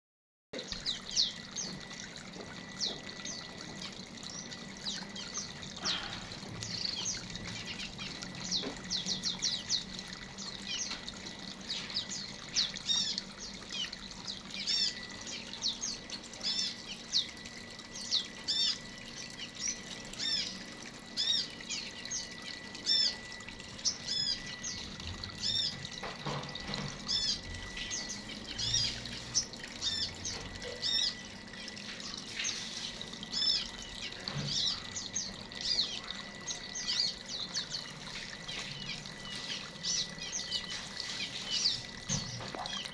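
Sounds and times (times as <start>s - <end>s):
birds chirping: 0.6s - 42.9s.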